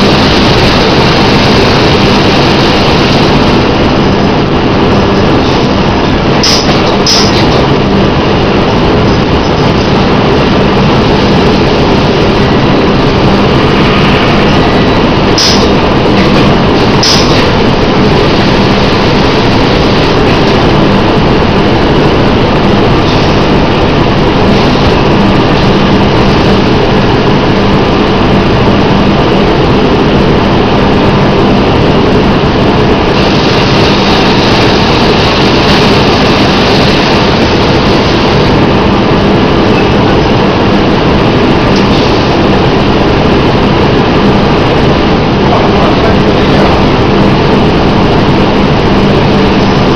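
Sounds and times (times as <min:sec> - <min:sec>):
machinery mechanical drone: 0:00.0 - 0:49.9
sharp mechanical clacks: 0:06.4 - 0:07.7, 0:15.4 - 0:17.5.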